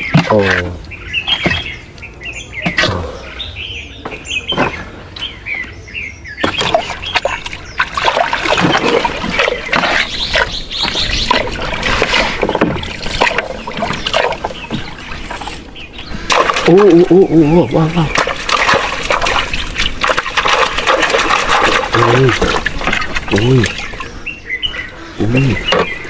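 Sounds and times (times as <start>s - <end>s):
water splashing and knocking: 0.0s - 0.7s, 1.4s - 1.8s, 6.4s - 24.1s
small birds chirping: 0.0s - 26.0s.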